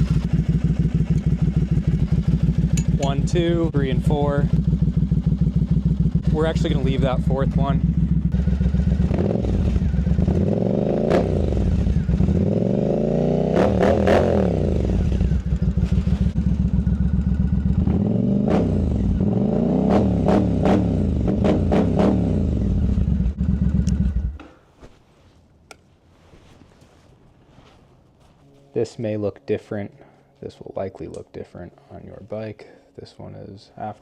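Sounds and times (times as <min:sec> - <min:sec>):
motorcycle engine idling: 0:00.0 - 0:19.8, 0:20.9 - 0:24.6.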